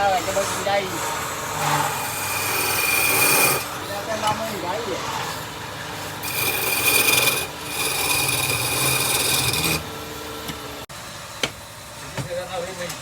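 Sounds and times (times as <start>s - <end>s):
tool hissing on spinning wood: 0.0s - 4.7s, 6.2s - 9.8s
lathe running: 0.1s - 10.8s.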